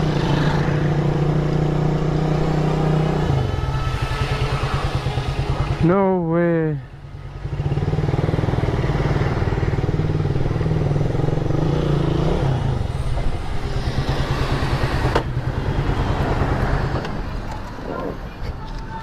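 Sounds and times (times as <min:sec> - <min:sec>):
small motorcycle engine running: 0:00.0 - 0:12.8.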